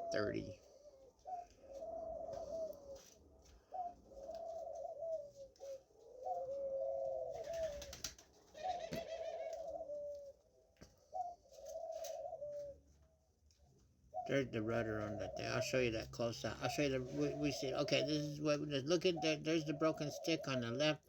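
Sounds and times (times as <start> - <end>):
dove cooing: 0.0 - 13.0, 14.0 - 21.0.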